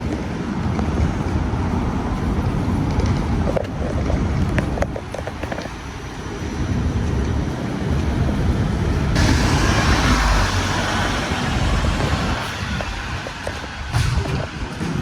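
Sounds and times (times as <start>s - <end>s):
low rumble of vehicles: 0.0s - 15.0s
steady hiss: 7.6s - 15.0s.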